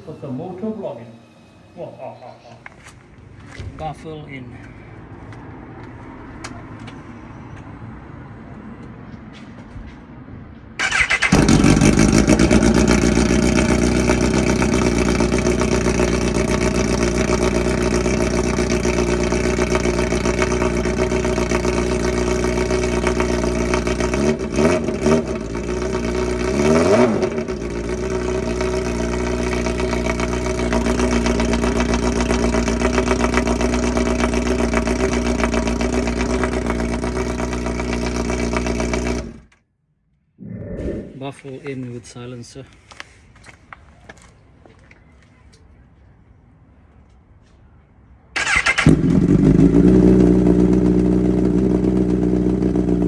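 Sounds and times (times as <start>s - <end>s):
motorcycle engine idling and revving: 10.0s - 39.6s, 48.4s - 53.0s.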